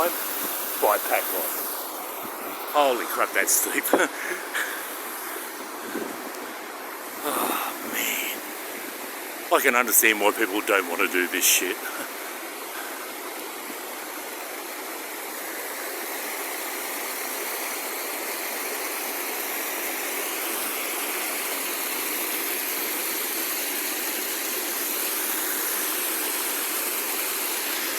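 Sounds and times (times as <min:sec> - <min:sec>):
waterfall roaring: 0:00.0 - 0:16.6.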